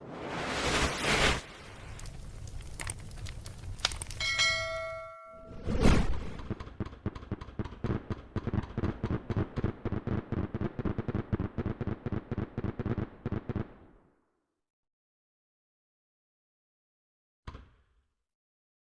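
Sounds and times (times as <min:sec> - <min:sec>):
crackling firework pops: 0:01.4 - 0:04.3, 0:06.3 - 0:14.0.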